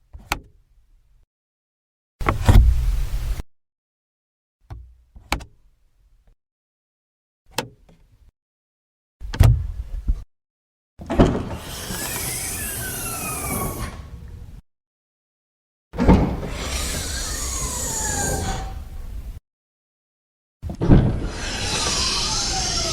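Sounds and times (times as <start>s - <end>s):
sliding whir: 11.2s - 14.6s, 16.0s - 19.4s, 21.0s - 22.9s.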